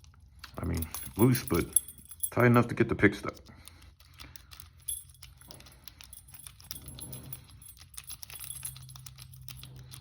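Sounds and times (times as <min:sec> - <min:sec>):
lock pick clicking and scraping: 0:03.2 - 0:10.0.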